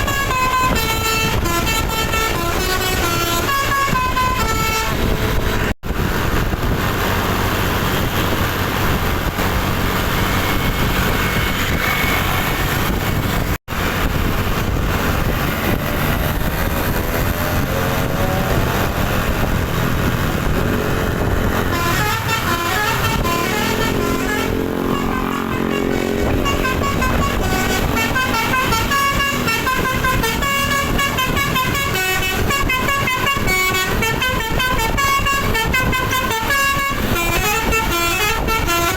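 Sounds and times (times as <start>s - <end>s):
multi-tone musical bus horn: 0.0s - 5.8s, 16.8s - 38.9s
engine and traffic noise: 0.0s - 38.9s.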